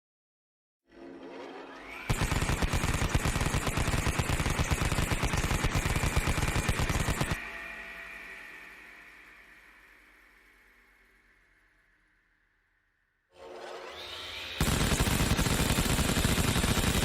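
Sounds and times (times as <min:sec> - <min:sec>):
machine gun rapid fire: 0:02.1 - 0:07.4, 0:14.6 - 0:17.0
rising whine: 0:07.2 - 0:12.6.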